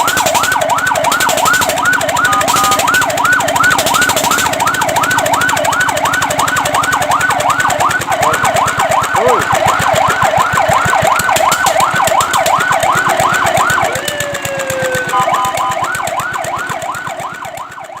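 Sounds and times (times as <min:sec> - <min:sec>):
fire truck siren yelping: 0:00.0 - 0:18.0.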